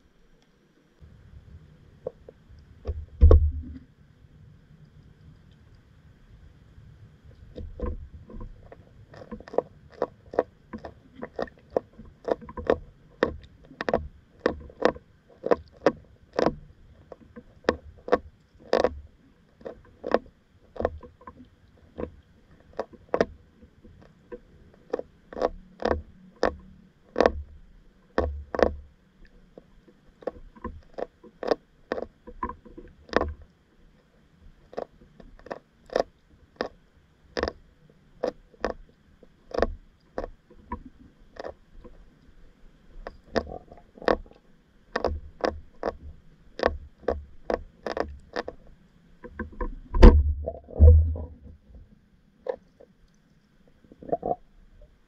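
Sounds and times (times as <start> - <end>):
fish chewing underwater clicks: 7.5 - 33.5, 34.6 - 37.6, 38.2 - 51.5.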